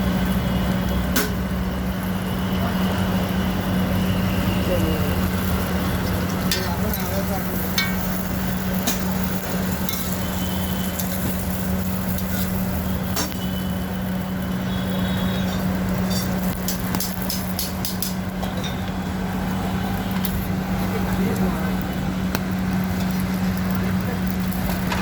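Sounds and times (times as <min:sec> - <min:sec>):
metal utensils clinking: 0:06.5 - 0:10.2, 0:10.9 - 0:12.6, 0:16.0 - 0:18.8.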